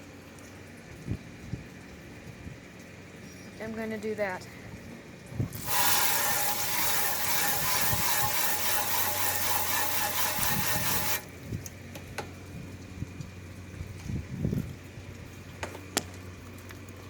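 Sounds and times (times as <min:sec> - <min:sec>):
garden hose spraying water: 0:05.4 - 0:11.4.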